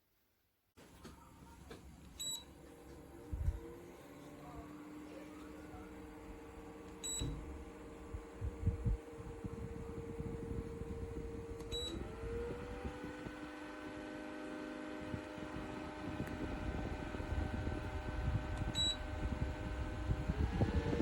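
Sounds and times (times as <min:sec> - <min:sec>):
fan motor humming: 0:00.8 - 0:21.0
short electronic beeps: 0:02.2 - 0:02.5, 0:07.0 - 0:07.3, 0:18.8 - 0:19.0.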